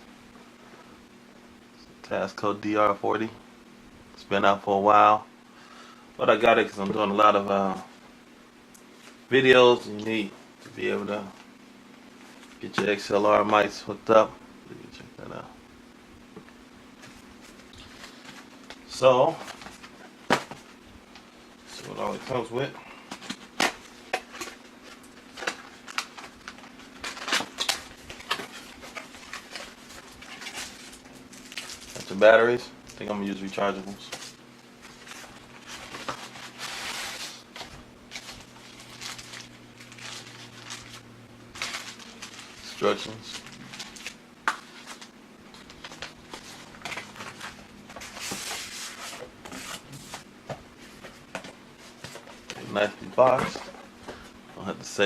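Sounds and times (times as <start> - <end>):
faint steady hum: 0.0 - 55.0
packaging rustling: 23.1 - 32.3, 33.9 - 54.2.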